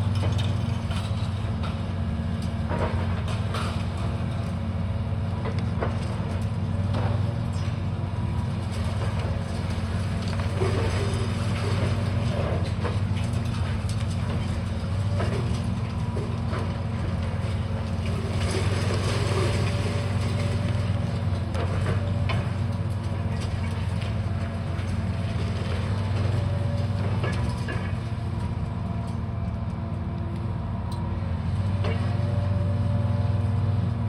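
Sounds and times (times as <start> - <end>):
diesel engine running: 0.0 - 34.0
knocks and clatter: 25.6 - 28.1.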